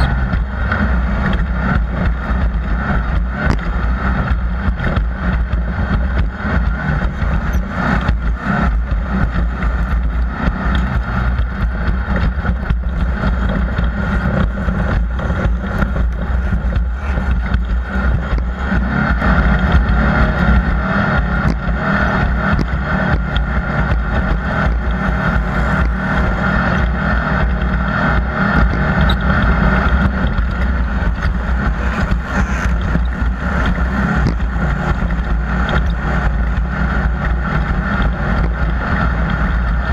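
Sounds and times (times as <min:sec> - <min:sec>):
rattles and knocks: 0:00.0 - 0:21.6
vehicle engine and road rumble: 0:00.0 - 0:39.9.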